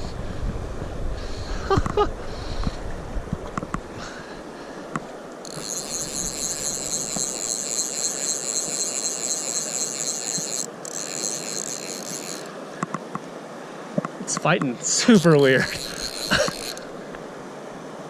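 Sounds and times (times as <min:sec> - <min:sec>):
wind: 0:00.0 - 0:18.0
river hiss: 0:03.9 - 0:18.0
fishing reel whirring: 0:05.3 - 0:12.6, 0:15.0 - 0:17.0.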